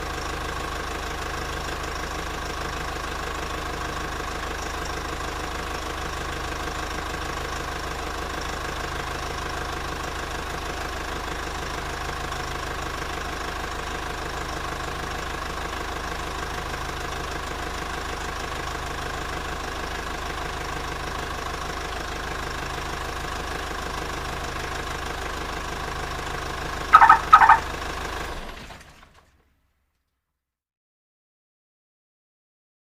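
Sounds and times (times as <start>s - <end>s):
car engine idling: 0.0s - 29.3s
short loud beeps: 27.0s - 27.6s.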